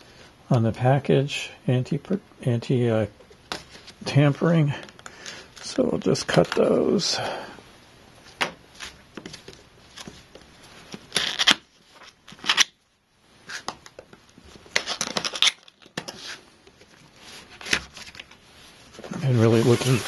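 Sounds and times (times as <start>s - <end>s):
tape seals being cut: 11.1s - 11.6s.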